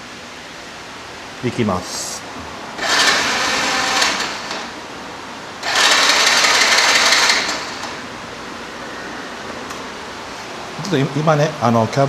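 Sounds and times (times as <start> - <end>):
electric starter motor whirring: 2.8 - 4.8, 5.6 - 8.1.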